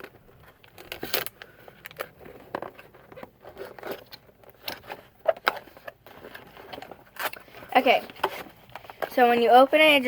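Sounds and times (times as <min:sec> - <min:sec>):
packaging crinkling: 0:00.0 - 0:07.6.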